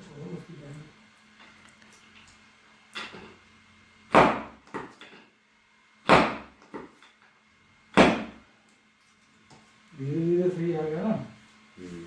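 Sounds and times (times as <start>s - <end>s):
chiropractic adjustment thuds: 4.1s - 4.9s, 6.1s - 6.6s, 8.0s - 8.4s.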